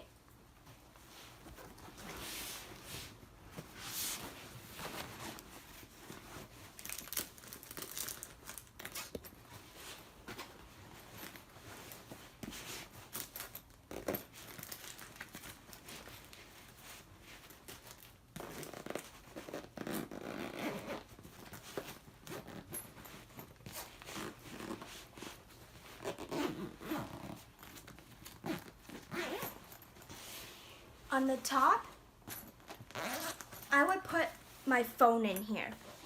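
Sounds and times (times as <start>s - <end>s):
nylon rustling: 0.1s - 36.0s
zippers being pulled: 12.4s - 15.4s, 17.8s - 30.4s, 32.2s - 33.7s.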